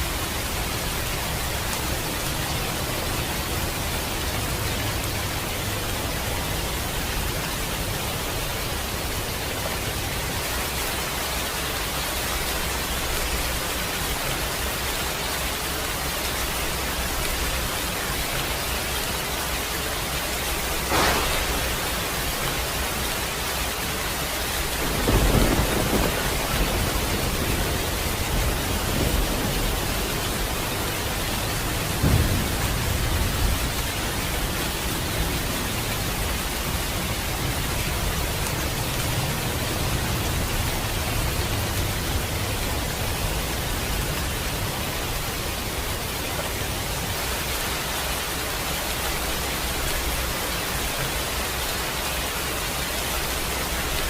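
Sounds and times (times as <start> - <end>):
steady rain falling: 0.0 - 54.0
thunder rumbling: 20.6 - 23.2, 24.4 - 46.1.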